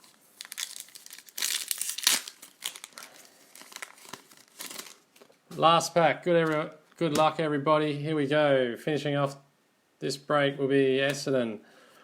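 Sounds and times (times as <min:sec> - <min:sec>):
wrapper crinkling and tearing: 0:00.0 - 0:05.4.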